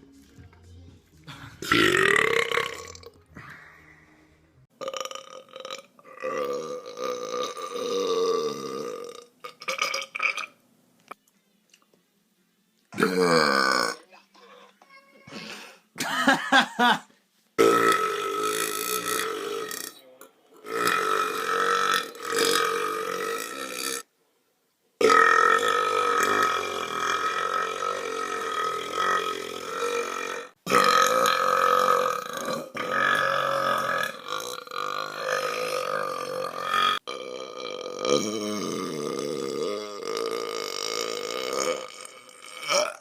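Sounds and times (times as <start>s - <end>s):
long drawn-out belches: 1.6s - 3.2s, 4.8s - 10.5s, 13.0s - 14.0s, 17.6s - 20.0s, 20.6s - 24.0s, 25.0s - 43.0s.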